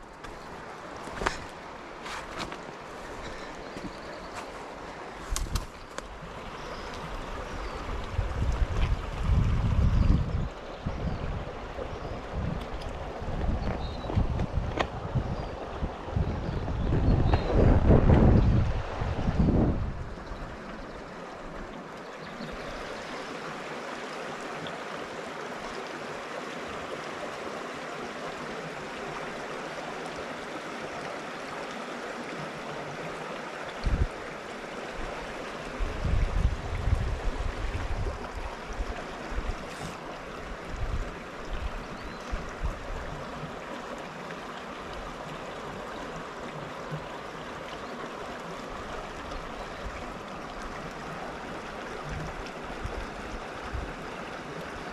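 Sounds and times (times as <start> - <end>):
creek water flowing: 0.0 - 54.9.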